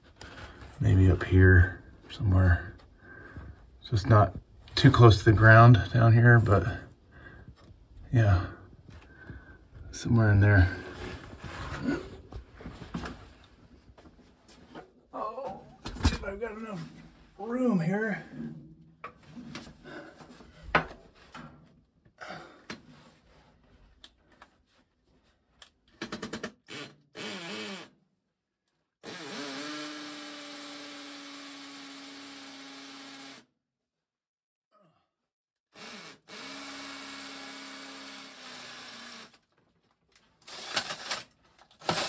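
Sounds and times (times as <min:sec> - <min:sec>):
hammer drill boring concrete: 0:26.7 - 0:27.9, 0:29.0 - 0:33.4, 0:35.8 - 0:39.4, 0:40.5 - 0:41.2, 0:41.8 - 0:42.0.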